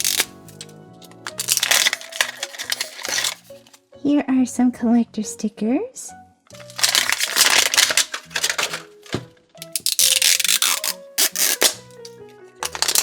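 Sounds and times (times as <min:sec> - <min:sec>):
plastic wrapping crinkling and tearing: 0:00.0 - 0:03.8, 0:06.6 - 0:13.0
background music: 0:00.0 - 0:13.0.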